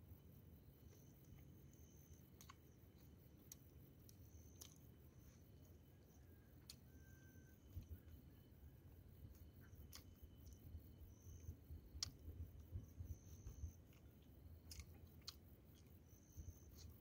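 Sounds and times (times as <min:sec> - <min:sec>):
faint chewing: 0:00.8 - 0:08.5, 0:09.2 - 0:17.0.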